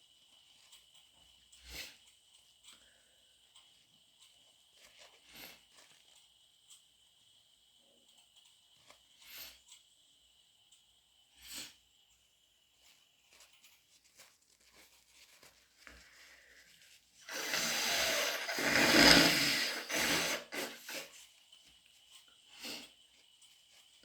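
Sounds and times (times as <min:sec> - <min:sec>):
person blowing nose: 0:17.5 - 0:21.1
person sniffing: 0:22.6 - 0:22.9.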